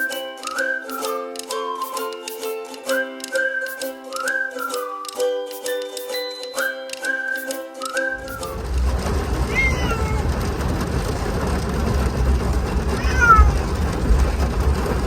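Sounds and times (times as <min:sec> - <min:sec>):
steady low rumble: 0:08.2 - 0:15.0
cat meowing: 0:09.4 - 0:10.4, 0:12.9 - 0:13.8.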